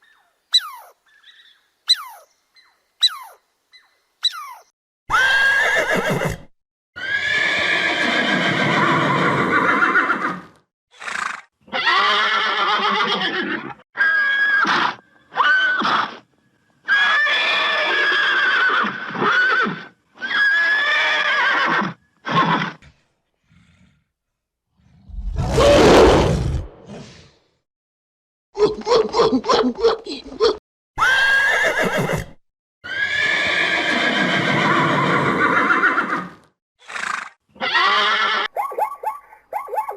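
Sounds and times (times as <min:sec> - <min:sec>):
horse whinnying: 0:05.1 - 0:16.2, 0:16.9 - 0:22.8, 0:25.1 - 0:26.7, 0:31.0 - 0:38.6.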